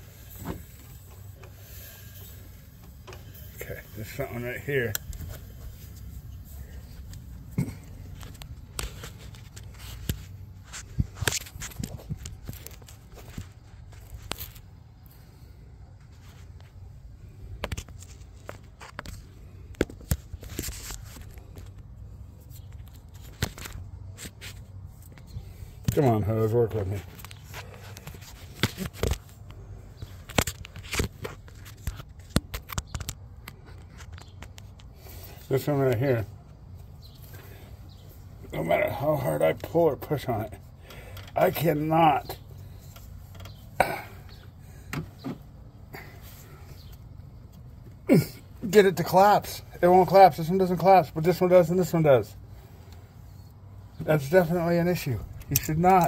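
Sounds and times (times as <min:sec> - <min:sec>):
clicks and knocks of engine parts: 0:00.0 - 0:14.8, 0:17.4 - 0:38.4, 0:39.5 - 0:49.1, 0:50.0 - 0:56.0
hands clicking on engine parts: 0:27.2 - 0:35.4, 0:42.4 - 0:46.2.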